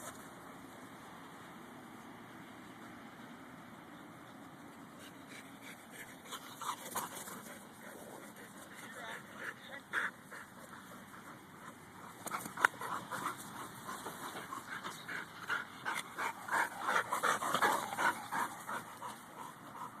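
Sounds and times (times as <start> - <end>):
dog panting: 5.0 - 20.0.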